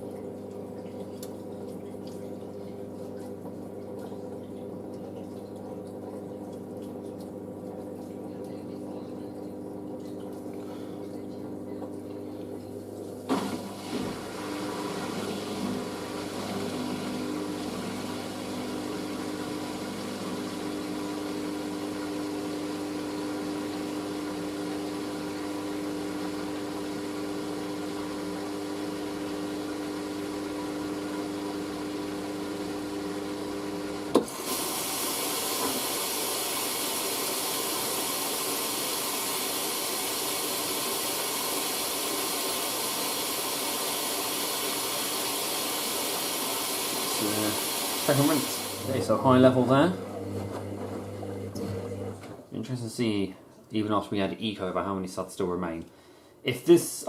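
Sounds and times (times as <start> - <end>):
water gurgling: 0.0 - 50.3
drain pump hum: 0.0 - 55.0
water filling hiss: 34.1 - 49.2.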